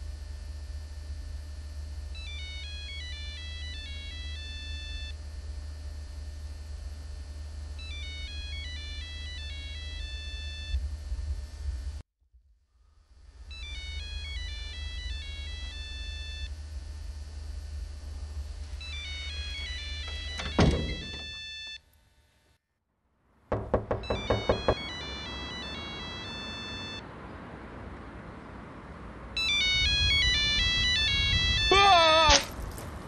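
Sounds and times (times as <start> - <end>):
low hum: 0.0 - 31.7
phone ringtone beeping melody: 24.0 - 27.0, 29.4 - 31.7.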